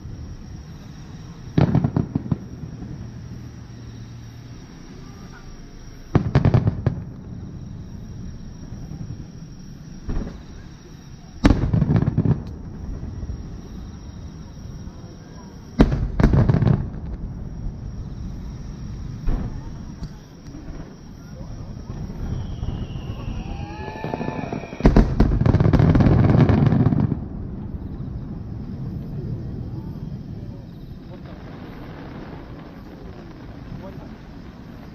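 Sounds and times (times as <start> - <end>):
fireworks booms and bangs: 0.0 - 34.9
firework whistle falling: 21.9 - 27.0.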